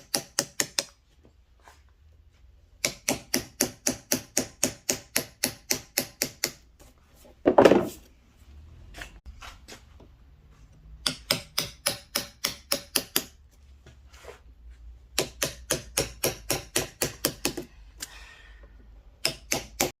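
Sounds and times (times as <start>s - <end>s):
mallet tapping chisel into wood: 0.0s - 0.9s, 2.8s - 6.6s, 11.0s - 13.4s, 15.1s - 17.7s, 19.2s - 19.9s.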